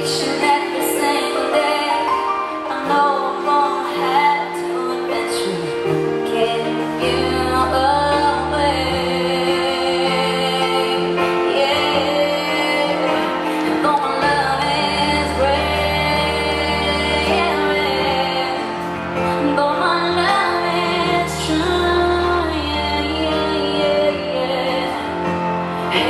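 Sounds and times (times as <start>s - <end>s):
band playing pop ballad: 0.0s - 26.0s
woman singing: 0.0s - 26.0s.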